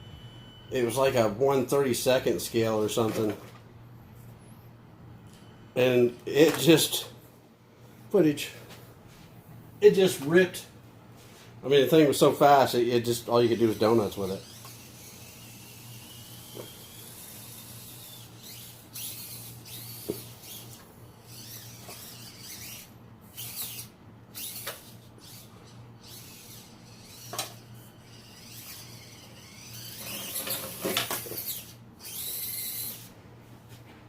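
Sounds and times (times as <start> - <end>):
small electric motor whining: 13.0 - 33.2.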